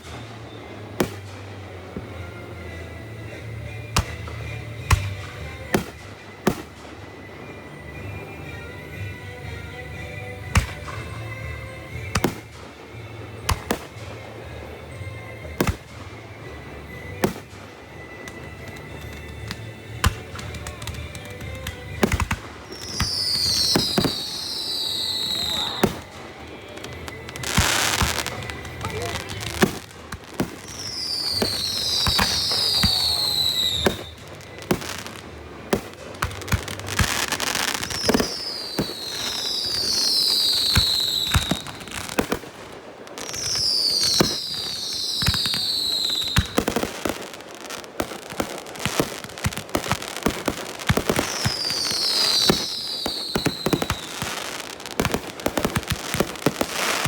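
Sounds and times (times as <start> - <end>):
firework bangs and crackles: 0.0 - 57.0
firework whistles falling in pitch: 17.2 - 42.5, 43.2 - 47.4, 50.1 - 57.0.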